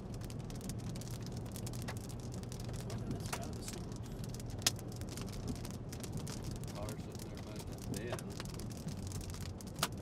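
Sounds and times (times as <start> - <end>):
car driving hum: 0.0 - 10.0
hailstones striking a car: 0.0 - 10.0.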